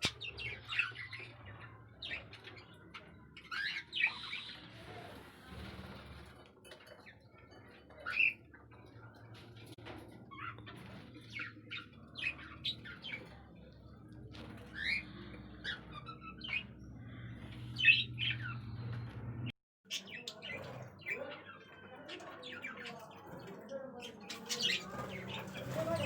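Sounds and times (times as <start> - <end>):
budgerigars chirping: 14.8 - 18.9.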